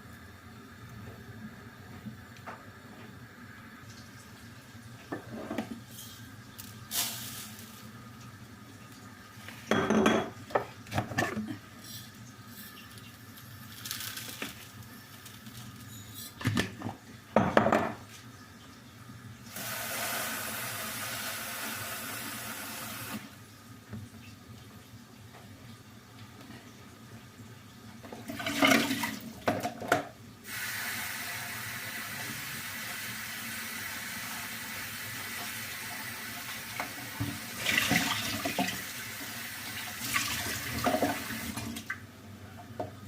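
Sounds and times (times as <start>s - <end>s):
dishes and utensils clattering: 9.7s - 12.1s.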